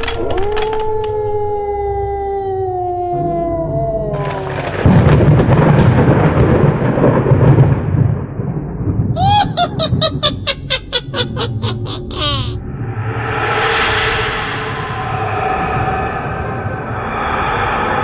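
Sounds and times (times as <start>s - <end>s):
wolf howling: 0.0s - 4.8s
thunder crack and rumble: 3.2s - 12.2s.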